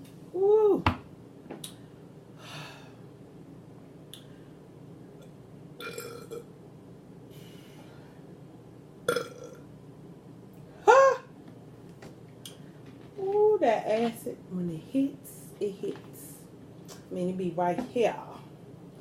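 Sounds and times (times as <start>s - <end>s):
woman burping: 9.1s - 9.6s.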